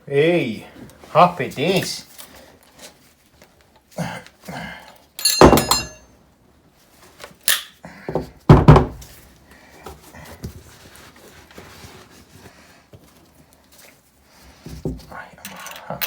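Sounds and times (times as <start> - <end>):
metallic clatter with ringing: 5.2 - 6.0.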